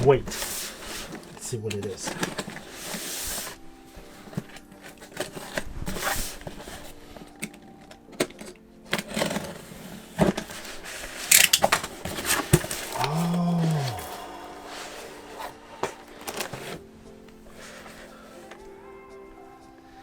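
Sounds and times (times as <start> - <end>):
packaging rustling and crinkling: 0.0 - 18.5
handling clicks and knocks: 4.2 - 13.1.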